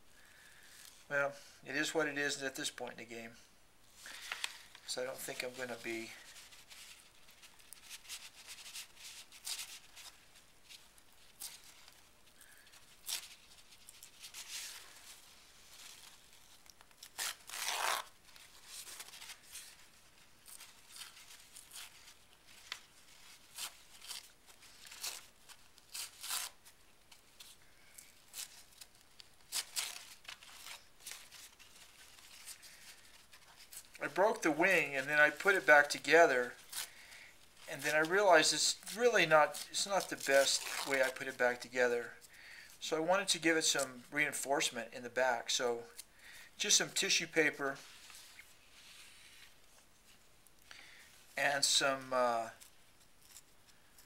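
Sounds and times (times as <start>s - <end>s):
paper rustling and tearing: 4.1s - 41.6s.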